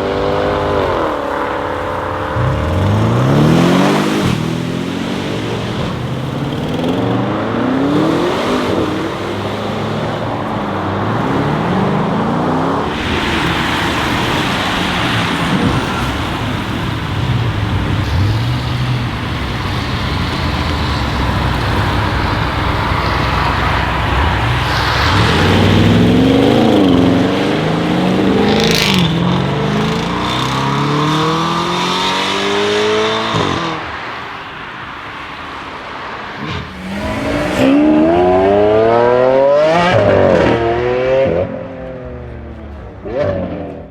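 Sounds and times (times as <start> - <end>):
car engine revving and accelerating: 0.0 - 34.0, 36.4 - 42.2.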